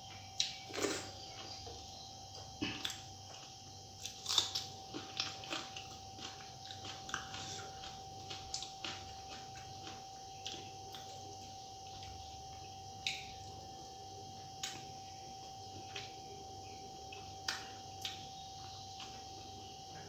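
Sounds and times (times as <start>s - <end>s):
faint steady hum: 0.0s - 20.0s
chewing and mouth smacks: 0.1s - 13.5s, 17.1s - 19.5s.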